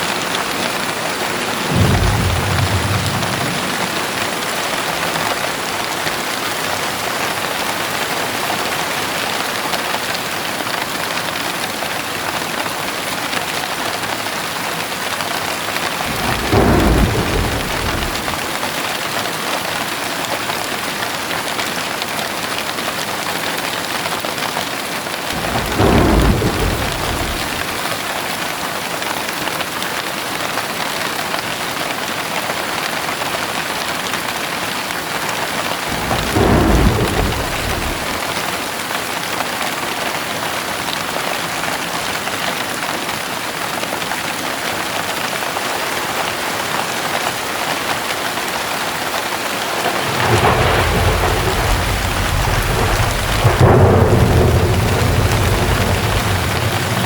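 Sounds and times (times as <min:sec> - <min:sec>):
steady rain: 0:00.0 - 0:57.0
thunder rolls: 0:00.1 - 0:06.3, 0:15.9 - 0:18.9, 0:25.3 - 0:28.1, 0:35.4 - 0:38.9, 0:49.6 - 0:57.0.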